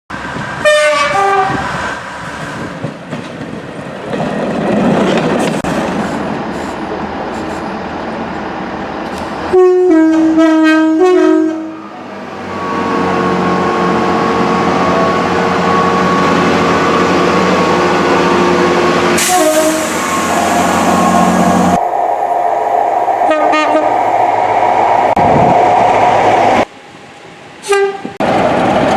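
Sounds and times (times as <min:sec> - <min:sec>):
passing train running noise: 0:00.1 - 0:28.9
train two-tone horn: 0:00.6 - 0:01.7, 0:09.5 - 0:17.0, 0:19.2 - 0:21.3, 0:23.2 - 0:23.9, 0:27.6 - 0:28.2.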